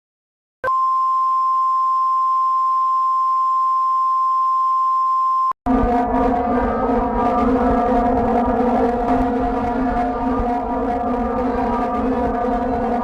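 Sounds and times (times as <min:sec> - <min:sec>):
steady electronic beep tone: 0:00.6 - 0:05.6.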